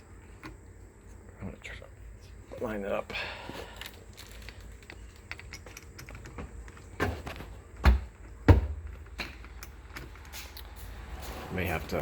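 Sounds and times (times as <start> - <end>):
small metal clicks: 3.8 - 6.9
metal parts knocking on door: 5.3 - 9.4.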